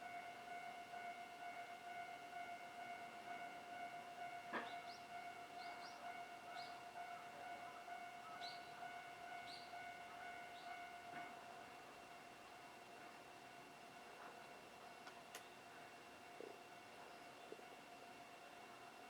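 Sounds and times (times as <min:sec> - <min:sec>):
level crossing warning bell ringing: 0:00.0 - 0:14.8.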